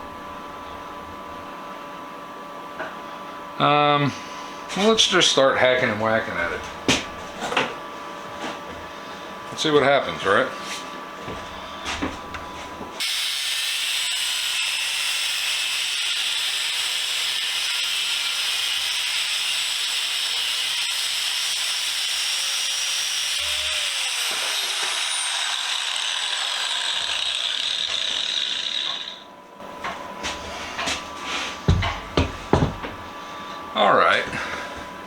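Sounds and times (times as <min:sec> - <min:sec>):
cut-off wheel grinding metal: 0:13.0 - 0:29.3.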